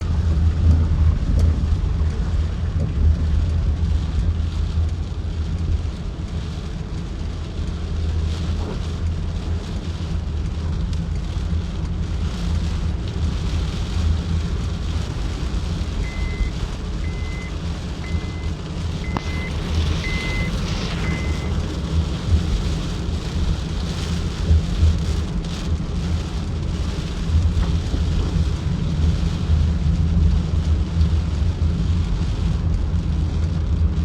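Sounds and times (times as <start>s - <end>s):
low rumble: 0.0s - 34.0s
faint rain hiss: 0.2s - 34.0s
short high electronic beeps: 16.1s - 16.5s, 17.1s - 17.5s, 18.1s - 18.5s, 19.1s - 21.5s.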